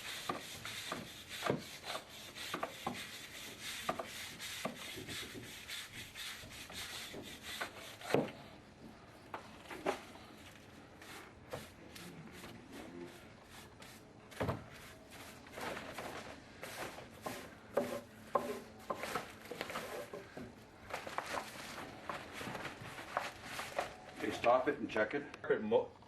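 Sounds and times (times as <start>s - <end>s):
scraping on a hard surface: 14.7s - 24.4s.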